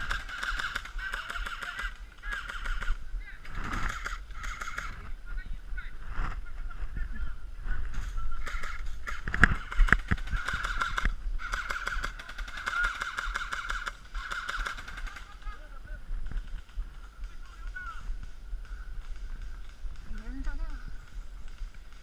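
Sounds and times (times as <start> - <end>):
airsoft gun firing bursts: 0.0 - 5.1, 8.0 - 15.5
sharp cracks: 0.0 - 5.1, 7.9 - 15.4.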